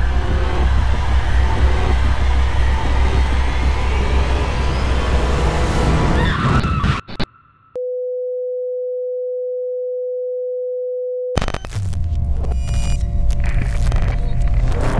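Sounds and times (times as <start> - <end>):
steady electronic tone: 0.0 - 6.2
dense film soundtrack rumble: 0.0 - 7.1, 11.7 - 14.9.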